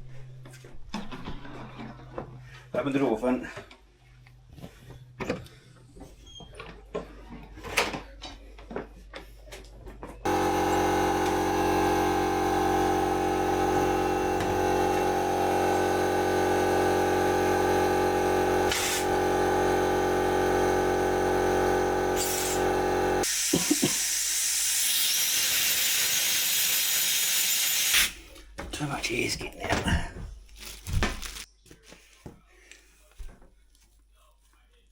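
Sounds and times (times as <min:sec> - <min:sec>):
air compressor humming: 0:10.2 - 0:28.4
compressed air hissing: 0:22.2 - 0:28.2.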